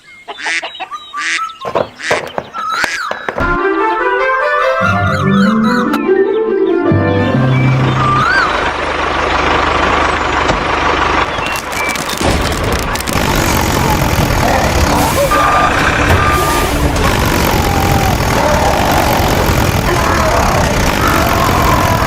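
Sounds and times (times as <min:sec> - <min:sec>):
dense machine noise: 0:07.5 - 0:22.0
low hum: 0:07.6 - 0:22.0.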